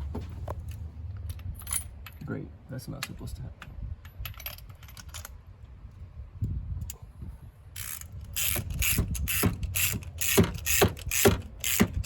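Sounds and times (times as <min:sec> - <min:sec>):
ratchet wrench clicking: 0:07.8 - 0:12.0.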